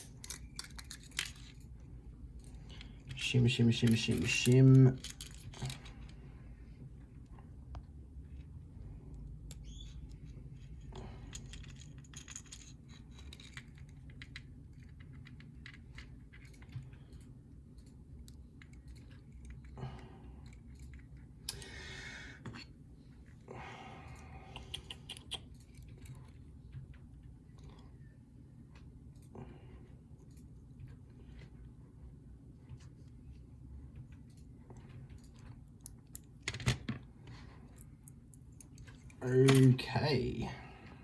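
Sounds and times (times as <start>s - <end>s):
metal lock parts clicking: 0.0s - 1.8s, 2.4s - 6.1s, 9.5s - 19.7s, 35.2s - 37.0s, 37.8s - 39.9s.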